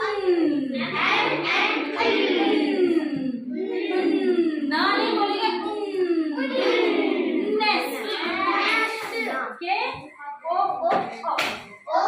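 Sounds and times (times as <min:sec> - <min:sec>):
children chanting in unison: 0:00.0 - 0:09.4.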